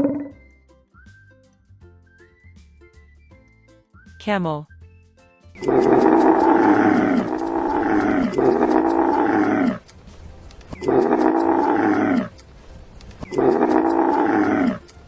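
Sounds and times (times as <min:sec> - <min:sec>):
camel bellowing: 0:05.6 - 0:09.8, 0:10.8 - 0:12.4, 0:13.2 - 0:14.9.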